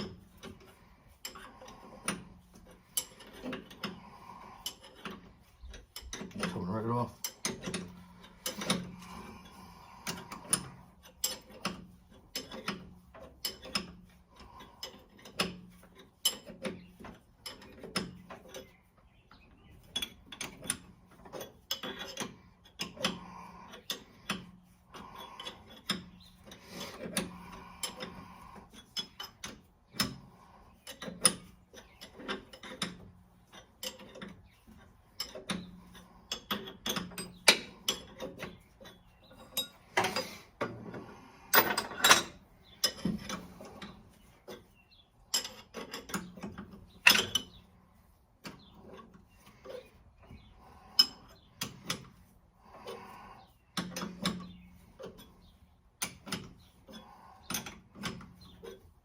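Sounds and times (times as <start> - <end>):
metal tools clanking: 0.0 - 18.8, 19.6 - 47.7.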